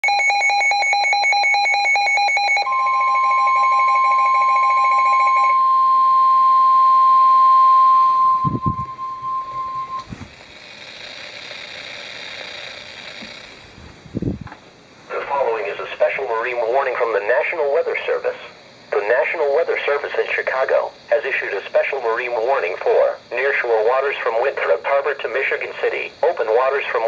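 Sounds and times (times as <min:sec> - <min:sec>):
steady warning alert tone: 0:00.0 - 0:06.4, 0:07.8 - 0:10.1
radio alarm beeping: 0:00.0 - 0:10.1
low thumps: 0:08.4 - 0:10.4.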